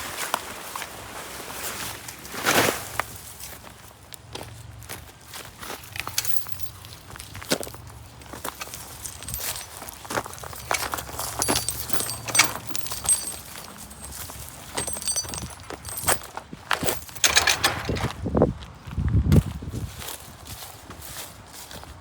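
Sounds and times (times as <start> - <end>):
footsteps: 8.4 - 18.2
clicks and knocks: 10.4 - 18.2.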